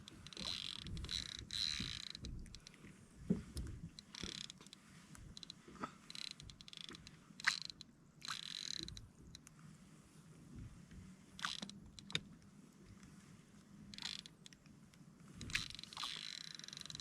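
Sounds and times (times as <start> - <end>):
fishing reel gears whirring and clicking: 0.1 - 2.7, 4.0 - 9.1, 11.4 - 12.2, 13.9 - 14.4, 15.4 - 17.0.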